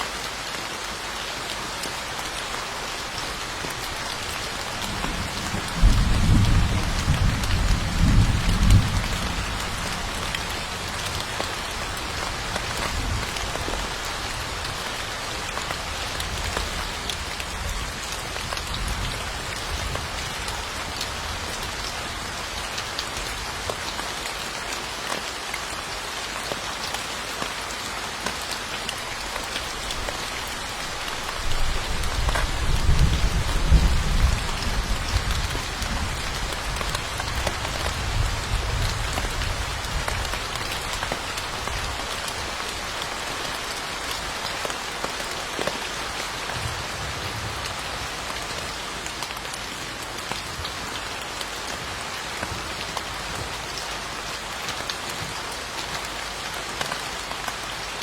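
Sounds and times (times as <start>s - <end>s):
heavy rain falling: 0.0s - 58.0s
thunder rumbling: 4.9s - 10.5s.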